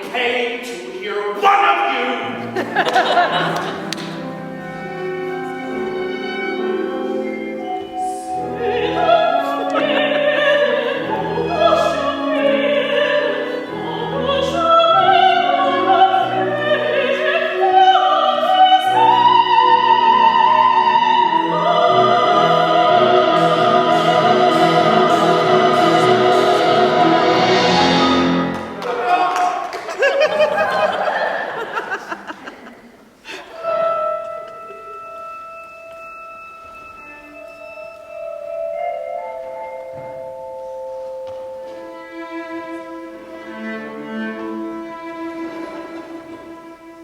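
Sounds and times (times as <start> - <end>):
instrumental accompaniment: 2.2 - 29.0, 33.5 - 47.0
operatic solo voice singing: 8.1 - 28.6.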